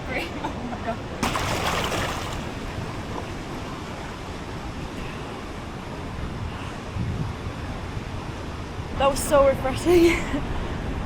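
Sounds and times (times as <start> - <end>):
water splashing surge: 1.2 - 3.3.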